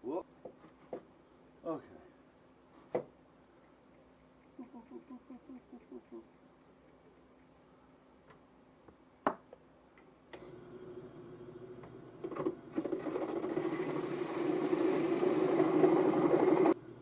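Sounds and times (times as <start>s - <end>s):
electric power tool running: 12.3s - 16.8s.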